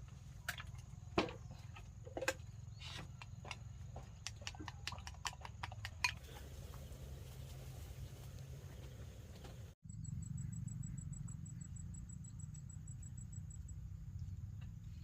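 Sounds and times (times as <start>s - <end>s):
steady low hum: 6.2s - 15.0s.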